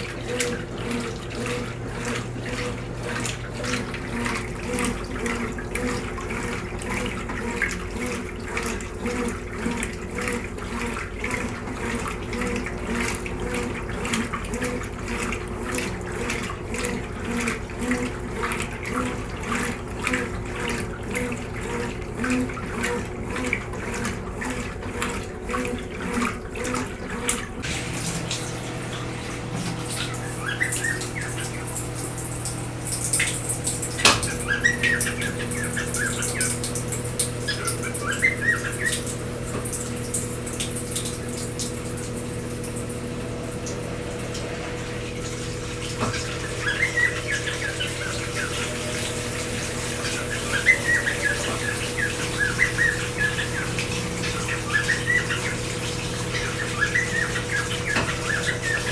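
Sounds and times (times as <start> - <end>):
washing machine running: 0.0 - 58.9
birds chirping: 27.7 - 42.0, 43.1 - 58.9.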